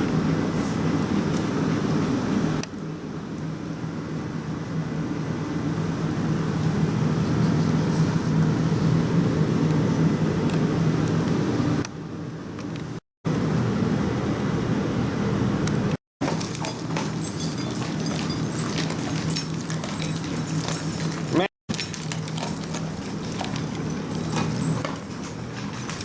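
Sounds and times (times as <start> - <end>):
low mechanical hum: 0.0 - 26.0.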